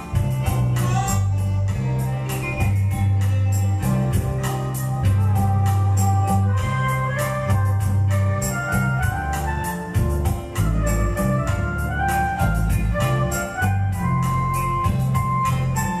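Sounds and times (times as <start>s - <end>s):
electronic keyboard melody: 0.0s - 16.0s
heavy bass line: 0.0s - 16.0s
steady drum beat: 2.6s - 15.7s.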